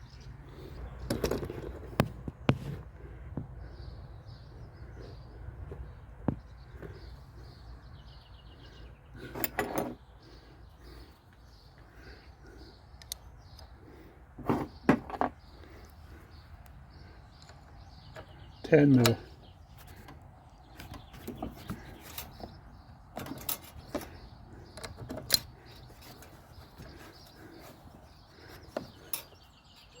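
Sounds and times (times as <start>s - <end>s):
small birds chirping: 0.0s - 30.0s
clicks and clatters on lawnmower: 1.0s - 2.8s, 9.2s - 10.0s, 17.4s - 30.0s.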